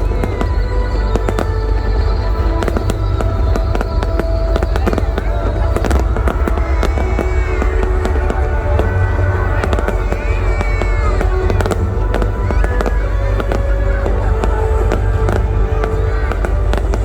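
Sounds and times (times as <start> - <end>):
fireworks bangs and crackling: 0.0 - 17.0
low rumble: 0.0 - 17.0
music playing: 0.0 - 17.0.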